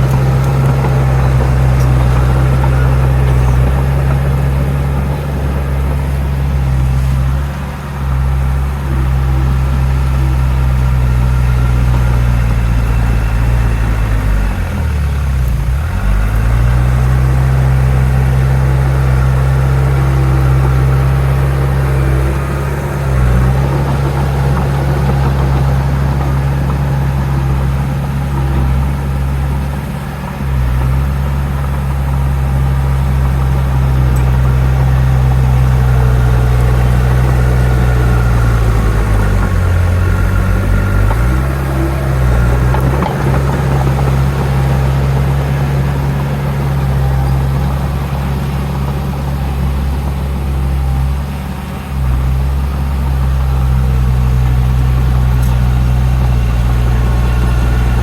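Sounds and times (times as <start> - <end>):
diesel engine low drone: 0.0 - 58.0.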